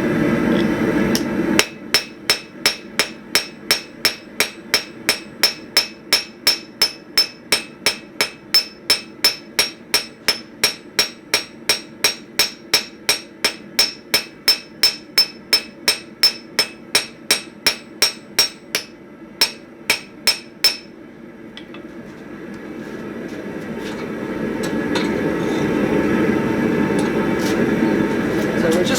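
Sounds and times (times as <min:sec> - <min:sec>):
hammer ringing on steel and anvil: 0:01.6 - 0:21.0.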